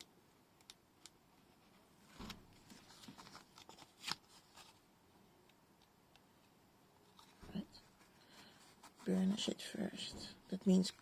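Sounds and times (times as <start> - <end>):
paper rustling: 2.1 - 4.8.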